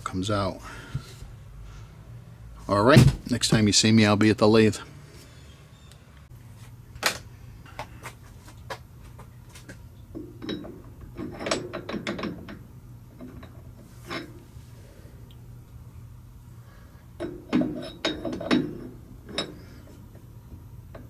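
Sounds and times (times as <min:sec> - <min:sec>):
steady low hum: 0:00.0 - 0:21.0
metal clicks and clanks: 0:10.4 - 0:12.6.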